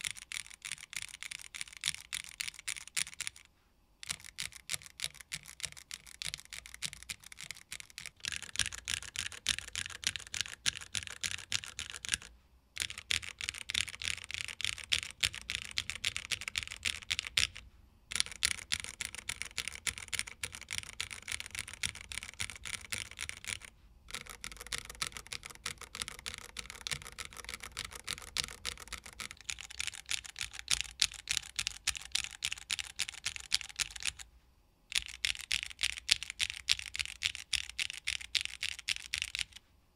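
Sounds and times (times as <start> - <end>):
fast typing on mechanical keyboard: 0.0 - 34.3, 34.9 - 39.6.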